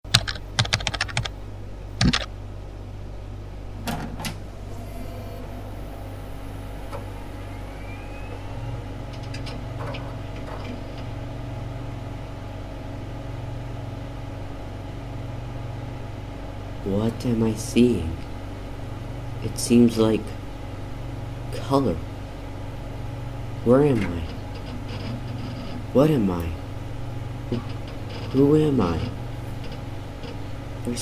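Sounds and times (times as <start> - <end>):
sharp clicks: 0.0 - 1.4, 2.0 - 2.3
low motor hum: 0.0 - 31.0
faint rising whine: 1.3 - 23.8.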